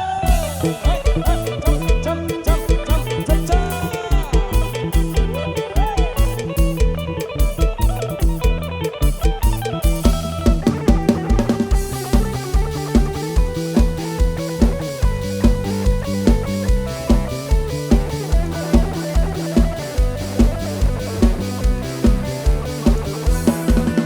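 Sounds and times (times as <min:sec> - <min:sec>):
bass: 0:00.0 - 0:24.0
plucked guitar lead: 0:00.0 - 0:24.0
kick drum beat: 0:09.2 - 0:24.0.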